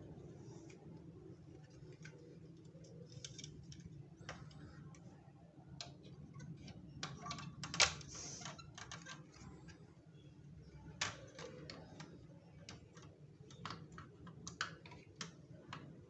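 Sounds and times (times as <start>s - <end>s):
plastic toy parts clicking: 1.6s - 5.1s, 5.7s - 9.6s, 10.8s - 16.0s.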